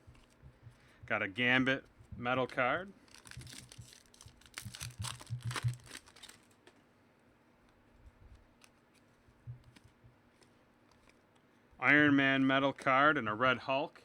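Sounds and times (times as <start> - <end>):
packaging crinkling and tearing: 3.0 - 6.8
faint taps and clicks: 9.3 - 11.5.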